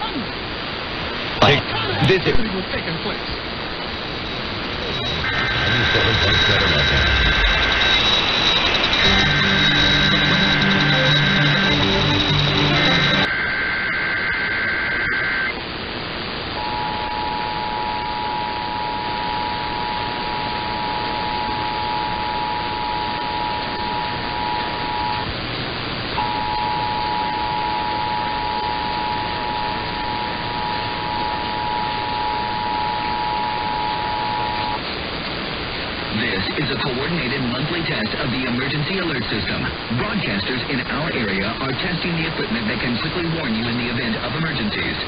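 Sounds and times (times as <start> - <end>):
radio static hiss: 0.0 - 45.0
warbling data header burst: 1.4 - 15.6, 16.6 - 25.5, 26.2 - 34.8
steady two-tone alert beep: 4.8 - 13.4.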